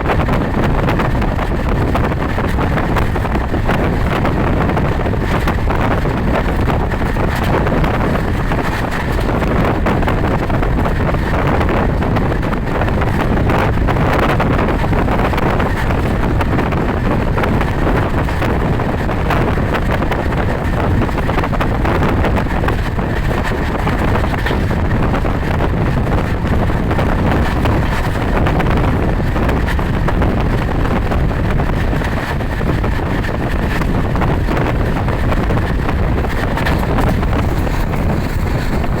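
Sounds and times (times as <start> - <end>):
moving vehicle running noise: 0.0 - 39.0
wind rushing over microphone: 0.0 - 39.0.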